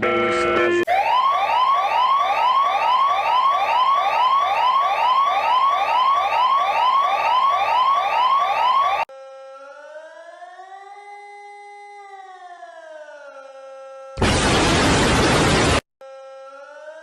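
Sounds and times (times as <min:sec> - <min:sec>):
multi-tone siren winding up: 0:00.8 - 0:14.2
siren rapid rising whoop: 0:00.9 - 0:09.1.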